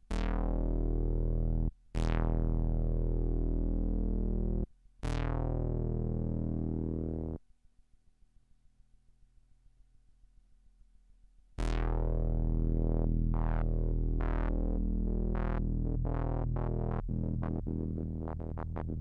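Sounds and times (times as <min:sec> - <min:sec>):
buzzy synth bass note sweeping: 0:00.1 - 0:07.4, 0:11.6 - 0:19.0
faint pulsing low synth tone: 0:11.6 - 0:19.0.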